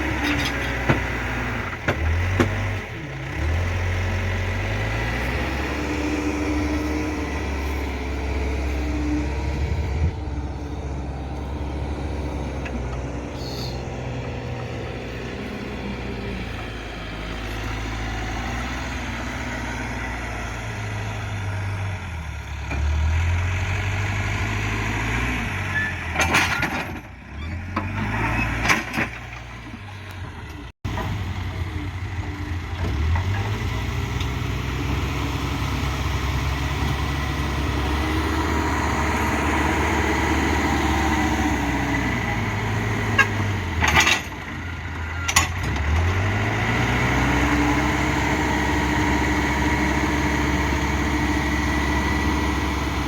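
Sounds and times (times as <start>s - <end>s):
diesel engine revving: 0.0s - 53.0s
metal clanks: 43.0s - 44.5s.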